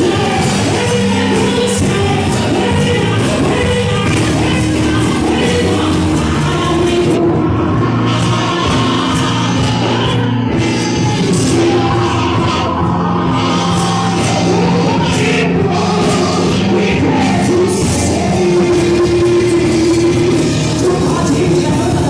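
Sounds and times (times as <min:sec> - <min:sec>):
people singing: 0:00.0 - 0:22.0
rock band playing: 0:00.0 - 0:22.0.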